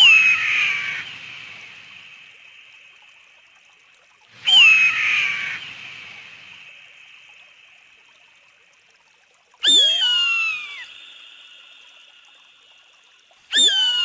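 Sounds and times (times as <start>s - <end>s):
eagle scream: 0.0s - 1.2s, 4.4s - 5.8s, 9.6s - 11.2s, 13.5s - 14.0s.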